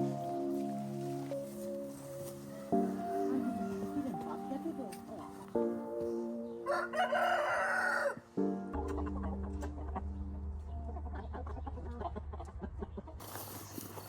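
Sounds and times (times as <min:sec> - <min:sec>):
soft background music: 0:00.0 - 0:12.6
rooster crowing: 0:06.6 - 0:08.3.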